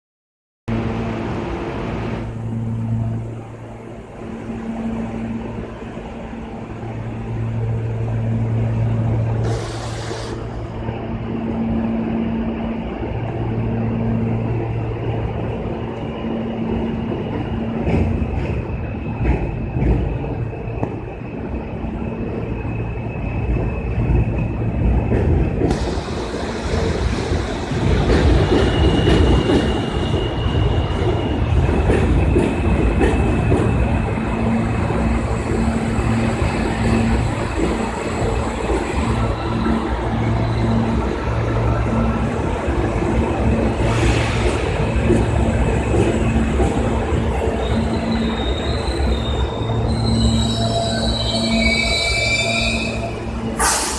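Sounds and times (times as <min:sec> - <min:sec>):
subway train wheels rumbling: 0:00.7 - 0:53.9
high-pitched wheel squeals: 0:47.1 - 0:53.9.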